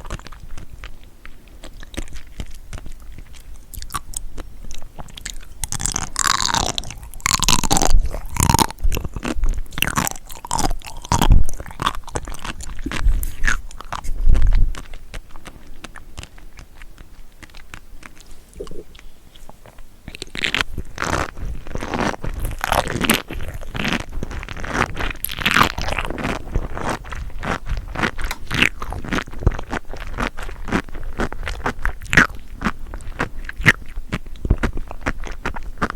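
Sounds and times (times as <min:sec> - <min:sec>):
crunchy chewing: 0:00.0 - 0:35.9.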